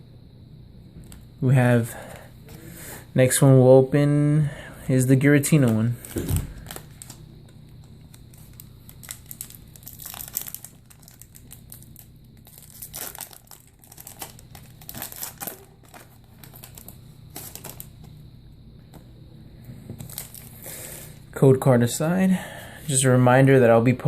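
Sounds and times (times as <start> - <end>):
foil wrapper crinkling: 5.6 - 18.1, 20.0 - 20.8.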